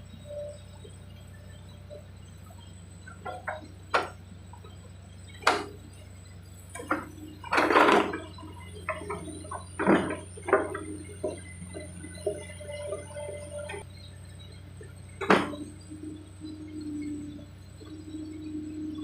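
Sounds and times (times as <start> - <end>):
excavator engine humming: 0.0 - 19.0
track clanks and knocks: 3.0 - 6.1, 6.7 - 13.8, 15.1 - 15.8.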